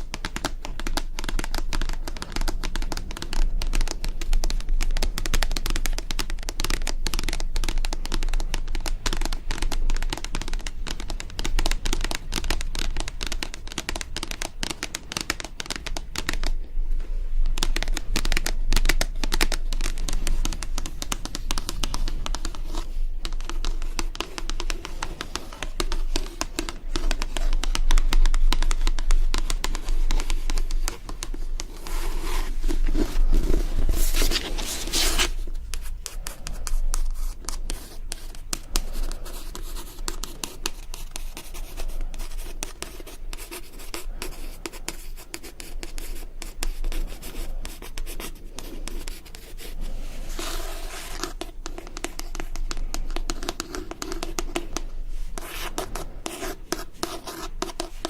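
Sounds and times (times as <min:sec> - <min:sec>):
hand rubbing a surface: 0:07.9 - 0:58.0
hand scratching a surface: 0:09.4 - 0:58.0.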